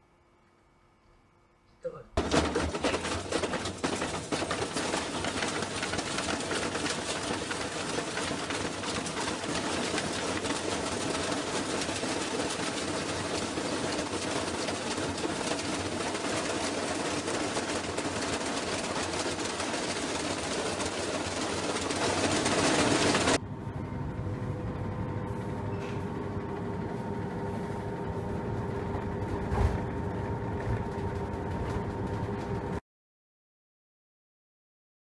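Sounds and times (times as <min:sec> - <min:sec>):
washing machine rattling: 0:02.2 - 0:23.4, 0:25.3 - 0:32.8
machine hum with faint whine: 0:20.5 - 0:32.2.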